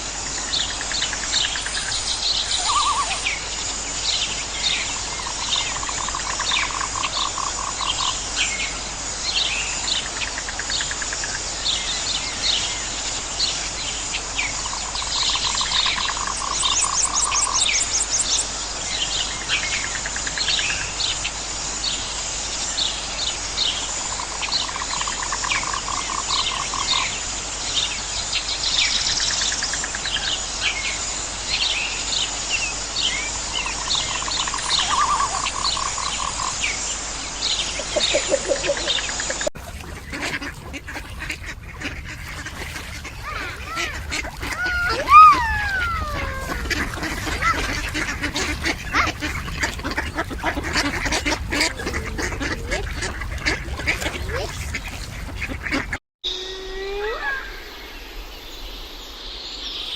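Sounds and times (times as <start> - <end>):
birds chirping: 1.4 - 3.5, 37.6 - 56.0.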